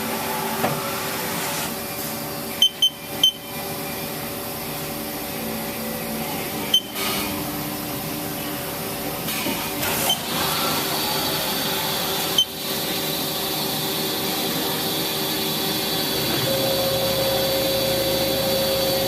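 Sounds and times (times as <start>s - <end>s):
lathe machine hum: 10.2s - 19.0s.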